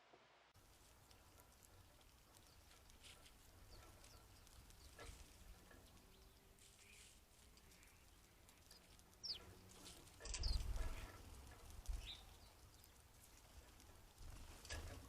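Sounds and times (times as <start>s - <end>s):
bird chirps: 2.3s - 11.1s, 11.9s - 13.0s.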